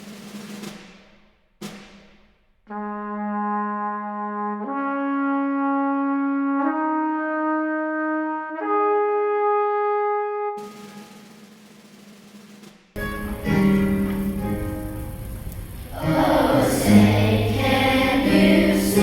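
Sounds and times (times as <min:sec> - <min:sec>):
trumpet long held notes: 0:13.0 - 0:19.0.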